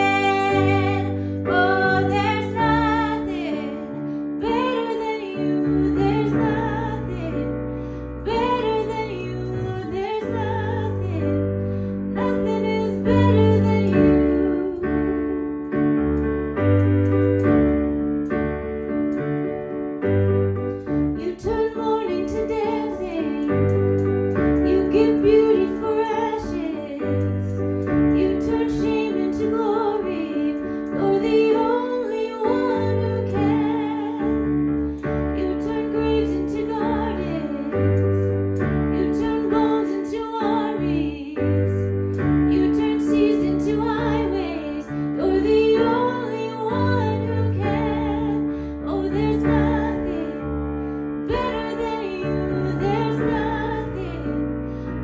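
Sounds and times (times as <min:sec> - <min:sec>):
piano chords: 0:00.0 - 0:55.0.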